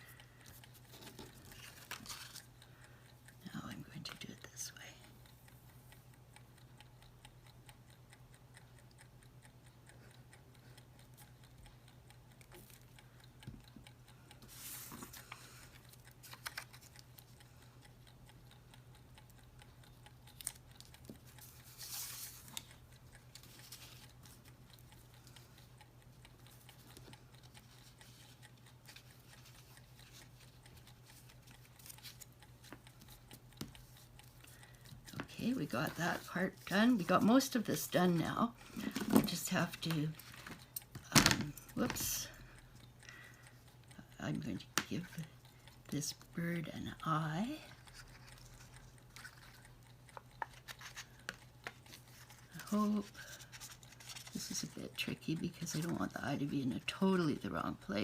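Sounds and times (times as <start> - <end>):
faint clock ticking: 0.0 - 58.0
steady low hum: 0.0 - 58.0.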